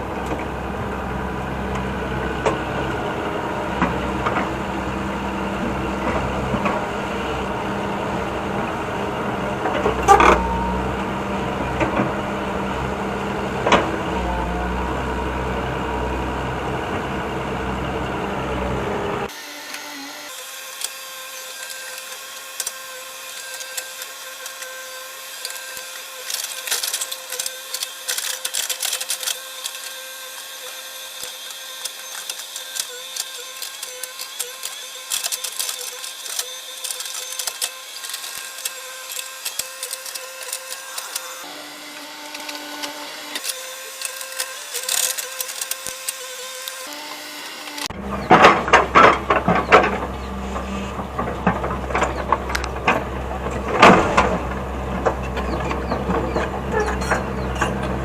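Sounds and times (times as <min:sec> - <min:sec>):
low engine hum: 0:00.0 - 0:19.3, 0:47.8 - 0:58.0
mechanical whine: 0:00.0 - 0:58.0
clicking and rattling: 0:25.4 - 0:30.0, 0:31.2 - 0:41.4.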